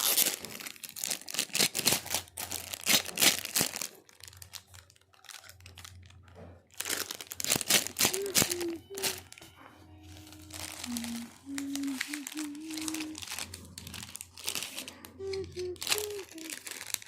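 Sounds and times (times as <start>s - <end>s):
plastic packaging crinkling: 0.0s - 17.0s.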